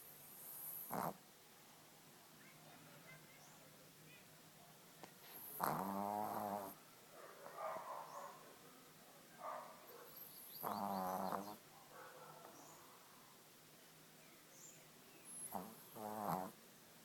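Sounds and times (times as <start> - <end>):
dog snoring: 0.1 - 1.2, 5.3 - 6.8, 10.2 - 11.6, 15.3 - 16.6.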